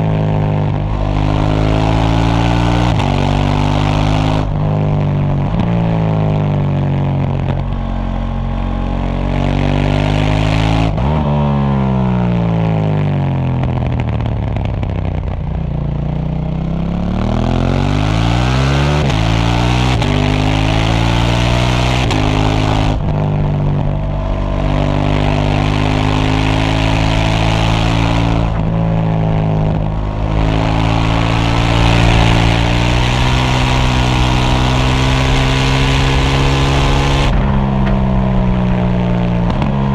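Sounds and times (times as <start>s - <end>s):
motorcycle engine revving: 0.0s - 39.9s
wind rush on microphone: 27.8s - 39.9s.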